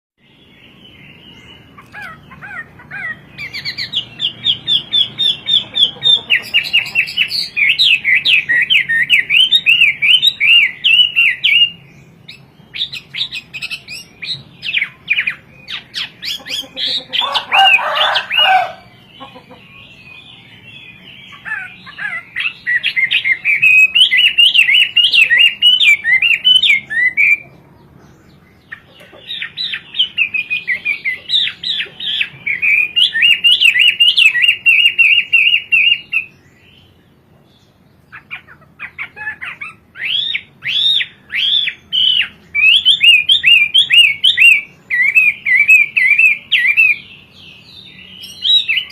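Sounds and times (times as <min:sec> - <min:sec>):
bird singing whistled phrases: 0:06.4 - 0:16.4, 0:20.3 - 0:27.5, 0:29.4 - 0:36.3, 0:38.9 - 0:47.1.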